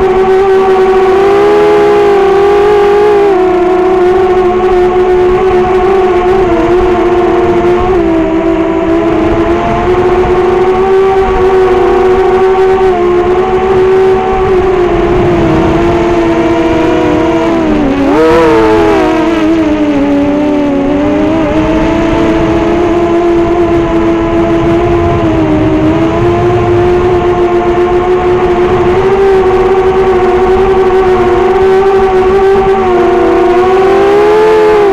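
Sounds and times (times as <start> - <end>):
drone motors whining: 0.0 - 34.9
wind rumble on microphone: 0.0 - 34.9.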